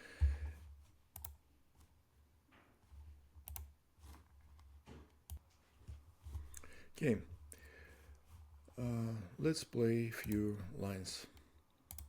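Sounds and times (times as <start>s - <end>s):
keyboard and mouse clicks: 1.1s - 1.4s, 3.4s - 5.4s, 10.2s - 10.6s, 11.3s - 12.0s.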